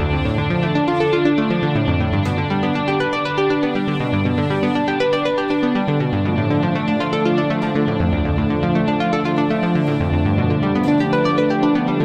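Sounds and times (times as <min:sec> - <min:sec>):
electronic music with synthesizer: 0:00.0 - 0:12.0.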